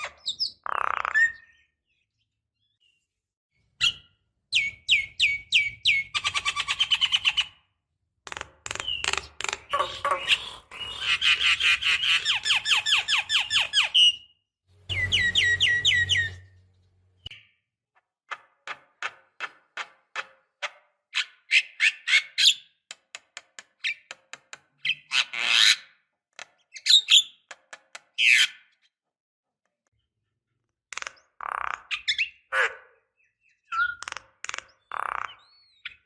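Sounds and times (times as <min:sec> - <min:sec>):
bird clicks and harsh calls: 0:00.0 - 0:01.6, 0:04.6 - 0:14.2, 0:18.0 - 0:28.9, 0:30.9 - 0:32.8, 0:33.5 - 0:36.0.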